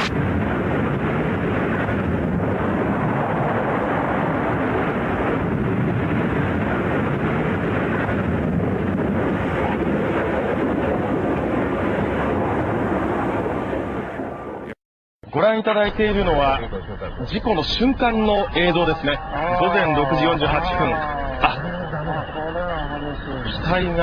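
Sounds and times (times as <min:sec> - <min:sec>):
dull rumbling noise: 0:00.0 - 0:14.8, 0:15.9 - 0:24.0
wind on microphone: 0:00.0 - 0:14.8.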